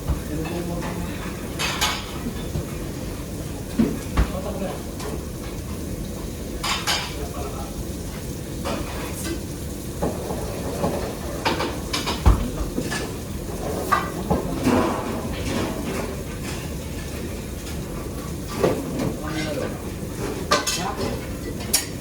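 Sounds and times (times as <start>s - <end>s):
pans and dishes clattering: 0.0s - 2.9s, 6.6s - 7.3s, 8.6s - 22.0s.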